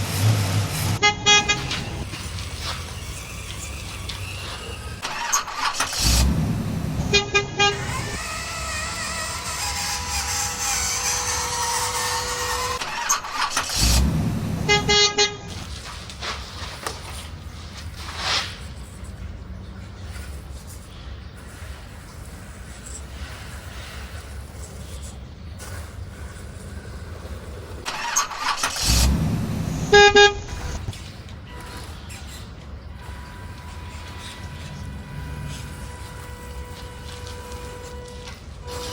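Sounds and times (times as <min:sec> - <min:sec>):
horn long tone: 0:00.0 - 0:02.8, 0:06.0 - 0:12.8, 0:14.4 - 0:15.7, 0:29.4 - 0:38.9
horn short toots: 0:00.8 - 0:02.0, 0:07.0 - 0:08.2, 0:14.6 - 0:15.6, 0:29.7 - 0:30.9, 0:31.5 - 0:38.9.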